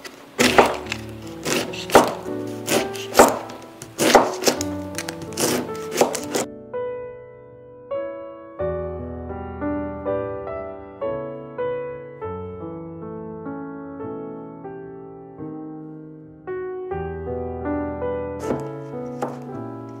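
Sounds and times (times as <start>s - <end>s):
background music: 0.3s - 20.0s
knife chopping on cutting board: 0.4s - 6.5s, 18.4s - 19.5s.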